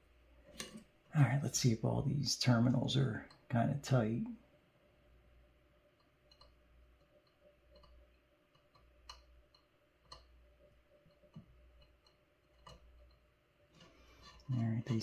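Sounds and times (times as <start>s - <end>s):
small tool clicking on circuit board: 6.0s - 10.3s.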